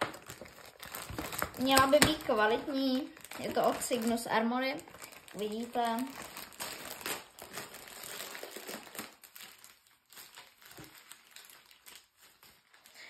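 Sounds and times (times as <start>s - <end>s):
packaging crinkling: 0.0s - 13.0s.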